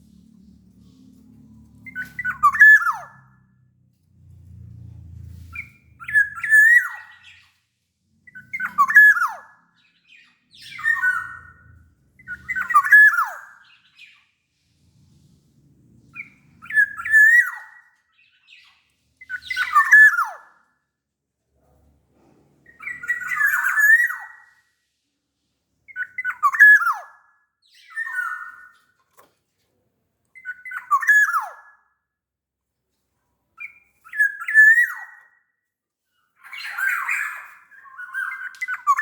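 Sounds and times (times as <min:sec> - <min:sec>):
bird singing: 0:00.1 - 0:03.6, 0:05.5 - 0:07.6, 0:08.3 - 0:14.4, 0:16.1 - 0:20.6, 0:22.7 - 0:24.6, 0:25.9 - 0:29.0, 0:30.4 - 0:31.9, 0:33.6 - 0:35.5, 0:36.4 - 0:39.0.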